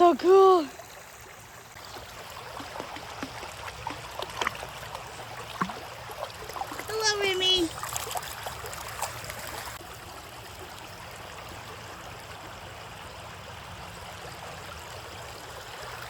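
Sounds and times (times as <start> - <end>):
creek water running over rocks: 0.0 - 16.0
faint splashes: 0.3 - 11.2.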